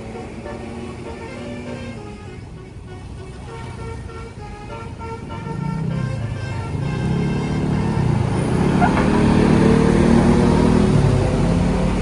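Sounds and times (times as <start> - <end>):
multi-tone horn tune: 0.0 - 8.6
bus engine: 0.0 - 12.0.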